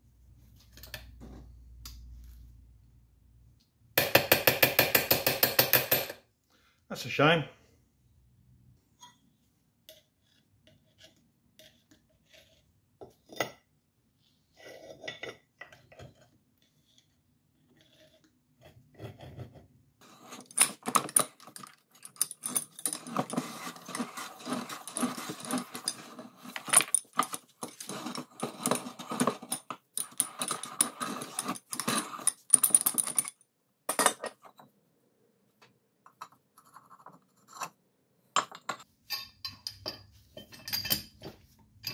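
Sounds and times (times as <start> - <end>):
metal clinking and scraping: 20.0 - 34.6, 38.4 - 41.9.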